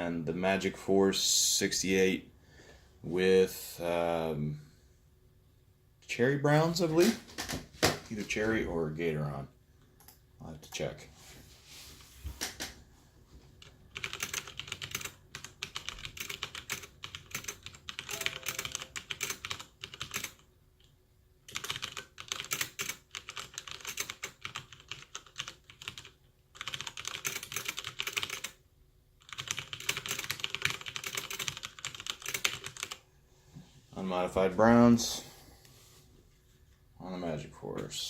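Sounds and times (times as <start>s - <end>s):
mechanical keyboard typing: 13.6s - 20.5s, 21.4s - 28.6s, 29.2s - 33.0s.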